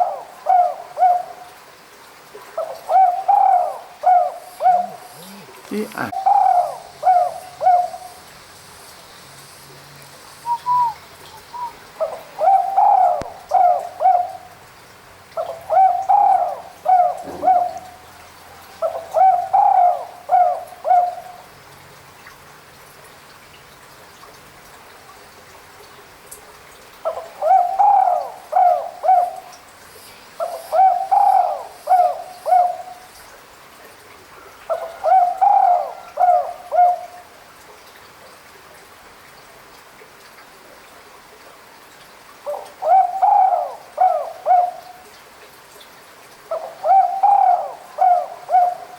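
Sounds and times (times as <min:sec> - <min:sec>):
dove cooing: 0:02.6 - 0:08.2, 0:10.5 - 0:14.5, 0:15.4 - 0:21.4, 0:27.1 - 0:29.5, 0:30.4 - 0:33.0, 0:34.7 - 0:37.2, 0:42.5 - 0:45.0, 0:46.5 - 0:48.9.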